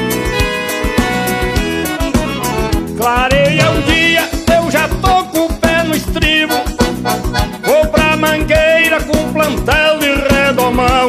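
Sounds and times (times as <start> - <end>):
accordion folk melody: 0.0 - 4.3, 6.4 - 8.7
steady beat: 3.1 - 4.7.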